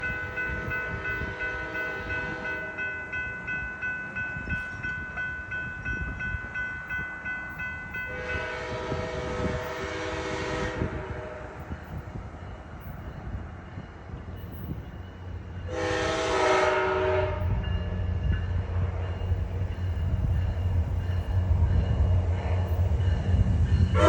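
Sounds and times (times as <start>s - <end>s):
train wheels rumbling on rail: 0.0s - 24.0s
train horn chord: 0.5s - 2.8s, 8.1s - 11.7s, 15.7s - 17.7s.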